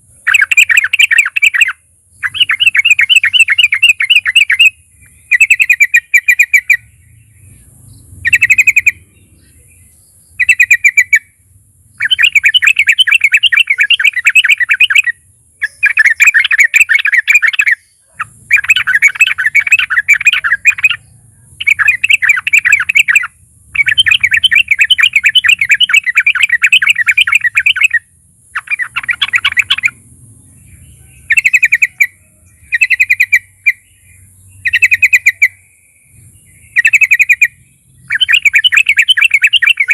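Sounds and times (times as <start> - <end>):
bulbul chattering song: 0.0 - 39.9.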